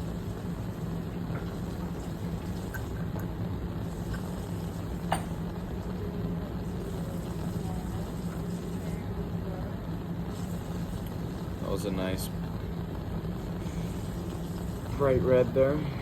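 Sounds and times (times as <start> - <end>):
steady rushing noise with low hum: 0.0 - 16.0.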